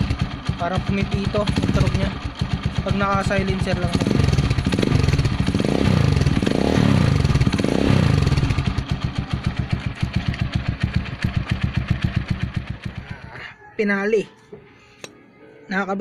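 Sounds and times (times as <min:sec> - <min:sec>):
motorcycle engine revving: 0:00.0 - 0:13.3.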